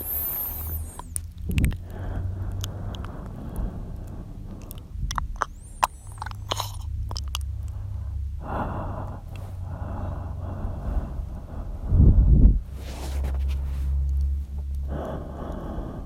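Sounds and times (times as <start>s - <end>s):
soft breath: 0.0s - 1.1s, 1.7s - 16.0s
wet mouth clicks and smacks: 0.1s - 7.8s.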